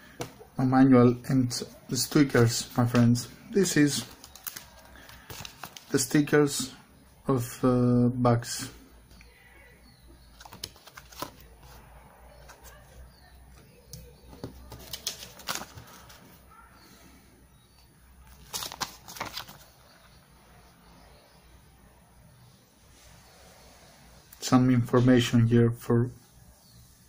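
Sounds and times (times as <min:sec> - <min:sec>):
paper rustling: 0:01.6 - 0:06.2, 0:10.3 - 0:16.4, 0:18.2 - 0:19.8.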